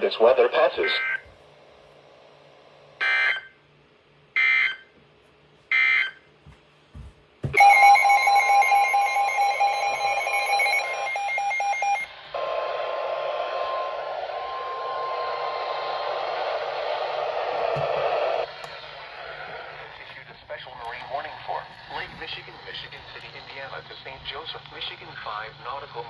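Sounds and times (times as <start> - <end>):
two-tone attention signal: 7.6 - 12.1.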